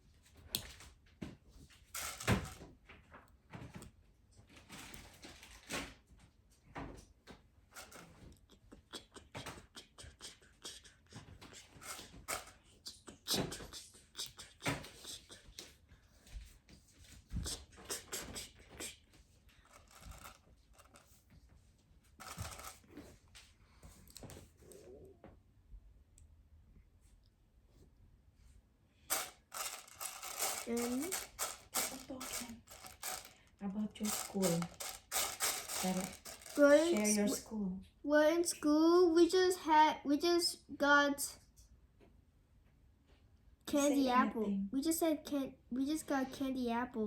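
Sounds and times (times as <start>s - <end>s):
plastic bricks clicking and snapping: 34.0s - 37.1s.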